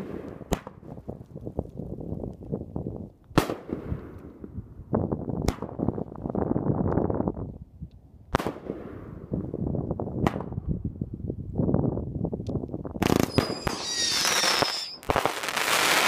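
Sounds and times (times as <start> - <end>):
fireworks reports: 13.0 - 15.2
fireworks crackling: 13.0 - 16.0
fireworks whistles: 13.0 - 16.0.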